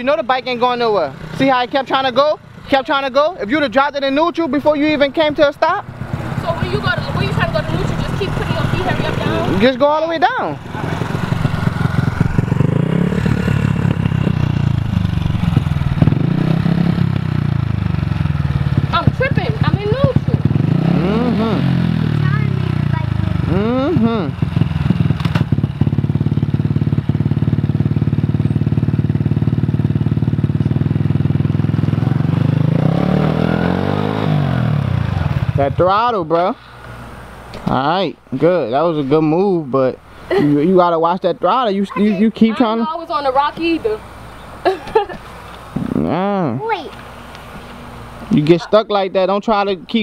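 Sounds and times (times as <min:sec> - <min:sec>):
small dirt bike engine idling: 0:00.0 - 0:37.2.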